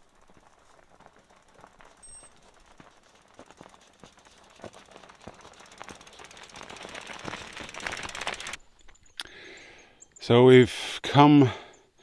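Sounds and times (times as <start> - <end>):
bicycle freewheel ticking: 0.0 - 8.6
tyres and frame rattling on stones: 0.0 - 9.1.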